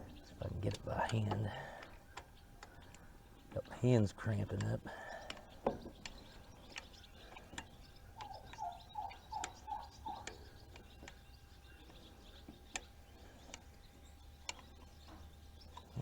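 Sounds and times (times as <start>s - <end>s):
light metallic clicks and taps: 0.6s - 3.0s, 4.3s - 11.2s.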